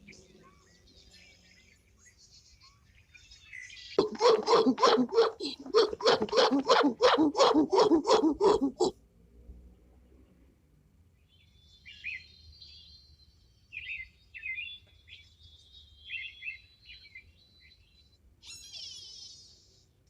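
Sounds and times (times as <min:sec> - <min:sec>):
small birds chirping: 0:00.0 - 0:08.9.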